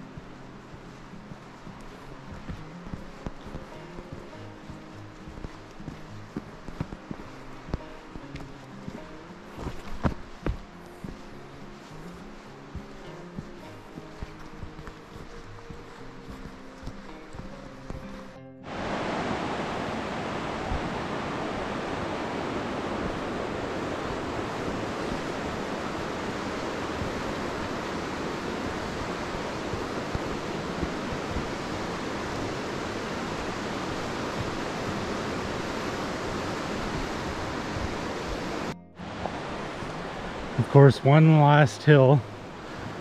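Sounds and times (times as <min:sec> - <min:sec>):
rushing water roar: 0:00.0 - 0:43.0.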